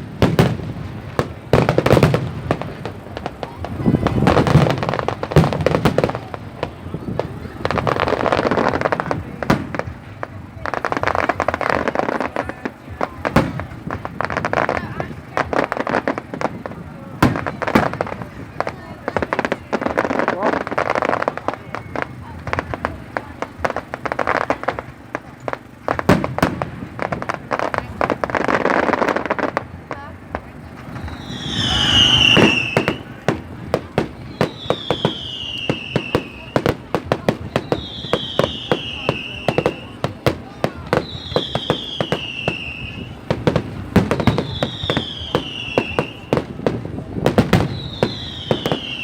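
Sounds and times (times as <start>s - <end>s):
fireworks crackling pops: 0.0s - 49.0s
loud firework bangs: 0.0s - 49.0s
falling firework whistle: 30.9s - 36.8s, 37.5s - 49.0s.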